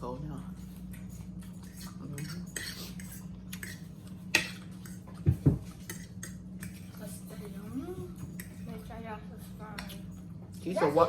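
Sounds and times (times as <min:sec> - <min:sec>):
steady low hum: 0:00.0 - 0:11.0
cutlery scraping on plates: 0:00.9 - 0:07.5, 0:08.1 - 0:08.9.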